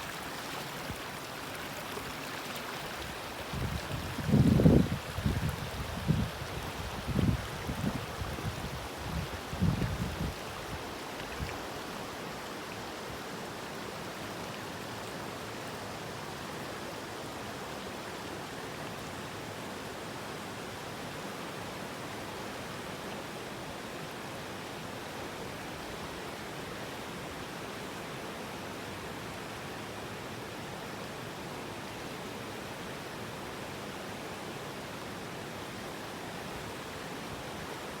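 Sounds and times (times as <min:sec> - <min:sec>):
running water rushing: 0:00.0 - 0:20.8.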